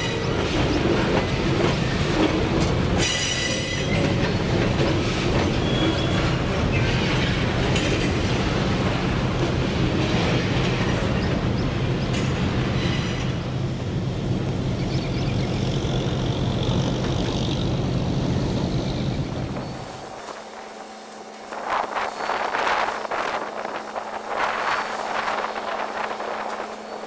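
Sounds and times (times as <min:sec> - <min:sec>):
diesel locomotive engine running: 0:00.0 - 0:27.0
train wheels on rails: 0:00.0 - 0:27.0
wind buffeting microphone: 0:21.4 - 0:27.0.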